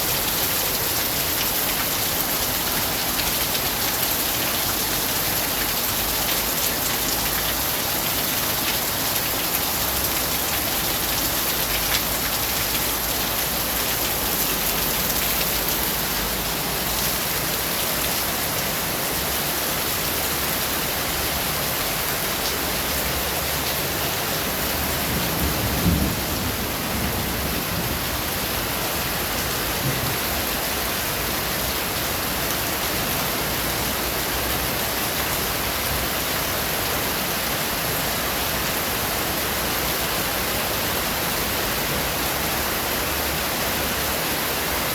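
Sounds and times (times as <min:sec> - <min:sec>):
steady rain: 0:00.0 - 0:44.9
low rumbling thunder: 0:25.0 - 0:28.3.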